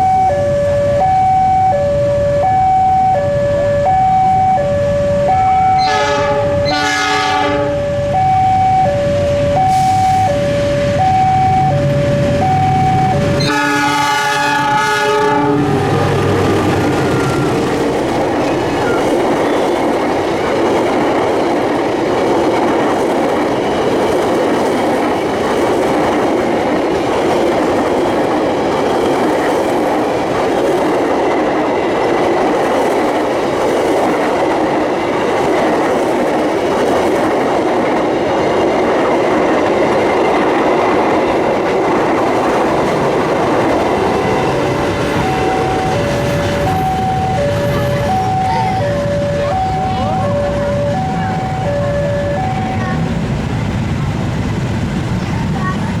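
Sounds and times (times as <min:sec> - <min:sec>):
train wheels clattering on rails: 0:11.7 - 0:56.0
alternating two-note tone: 0:45.2 - 0:53.1.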